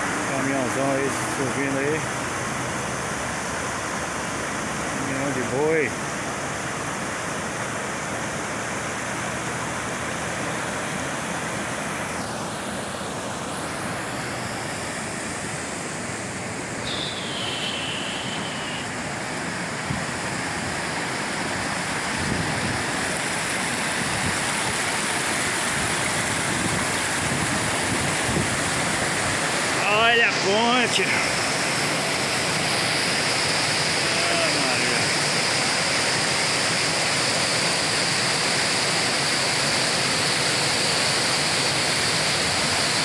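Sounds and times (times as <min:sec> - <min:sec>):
river water rushing: 0:00.0 - 0:43.0
brief high falling tone: 0:16.8 - 0:19.0.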